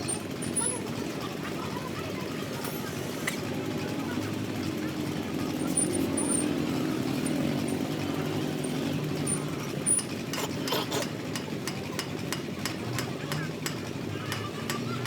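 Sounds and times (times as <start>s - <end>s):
engine running: 0.0s - 11.6s.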